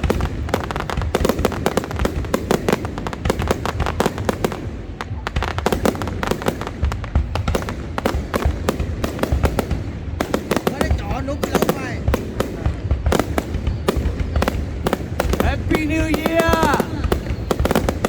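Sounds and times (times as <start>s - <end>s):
deep fireworks booms: 0.0s - 18.0s
fireworks bangs and crackles: 0.0s - 18.0s.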